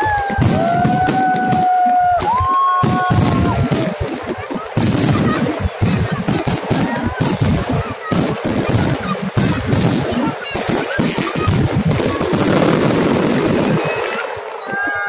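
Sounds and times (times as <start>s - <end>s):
fireworks and firecrackers bursting: 0.0s - 15.0s.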